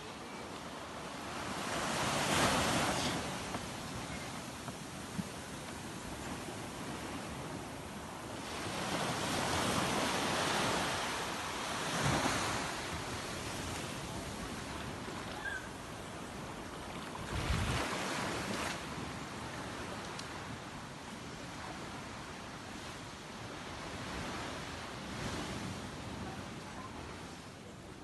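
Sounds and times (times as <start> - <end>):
sea waves washing ashore: 0.0 - 28.0
wind buffeting microphone: 17.2 - 18.3.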